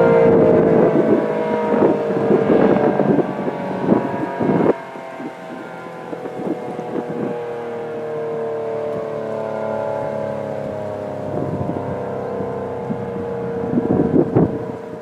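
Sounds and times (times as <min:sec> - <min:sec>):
warning siren wailing: 0:00.0 - 0:15.0
wind buffeting microphone: 0:00.0 - 0:15.0.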